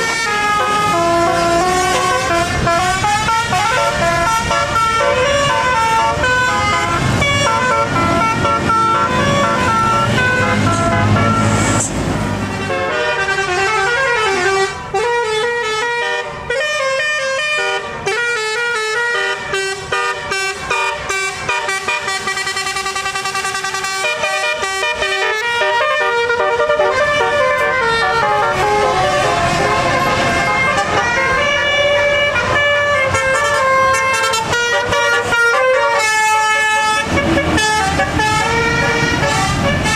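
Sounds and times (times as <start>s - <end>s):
bus musical horn tune: 0.0s - 39.9s.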